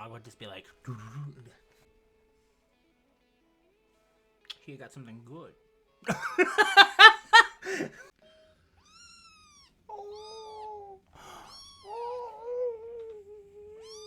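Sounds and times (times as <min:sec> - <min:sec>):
kitten meowing: 0:08.9 - 0:10.8, 0:11.4 - 0:12.4, 0:13.8 - 0:14.0.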